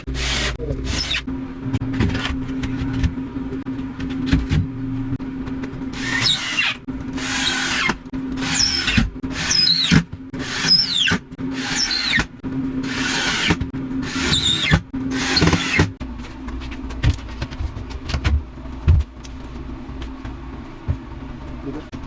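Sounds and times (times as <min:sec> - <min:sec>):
tool rasping with squeal: 0:00.0 - 0:01.3, 0:06.0 - 0:12.3, 0:12.9 - 0:16.0.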